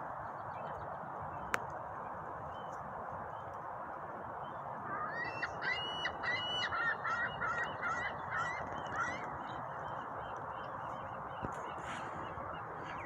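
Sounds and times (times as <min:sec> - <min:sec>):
birds calling: 0:04.9 - 0:13.0.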